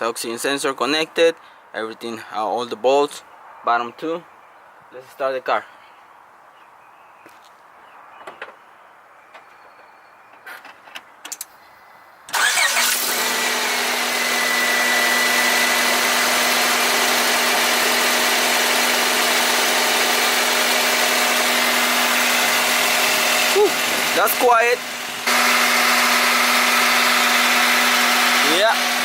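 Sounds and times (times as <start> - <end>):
car engine starting and idling: 12.3 - 29.0.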